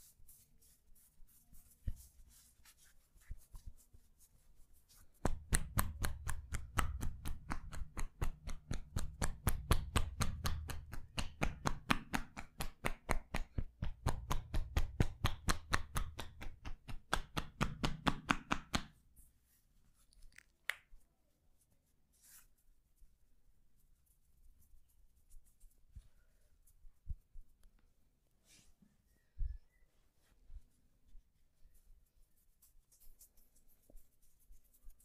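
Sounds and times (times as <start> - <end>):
percussion massage strikes on back: 5.2 - 19.0.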